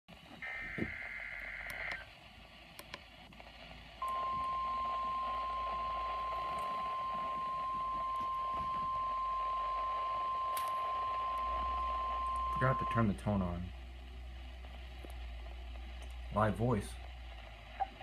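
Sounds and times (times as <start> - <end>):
faint radio hiss: 0.1 - 18.0
steady warning alarm tone: 0.4 - 2.0, 4.0 - 13.4.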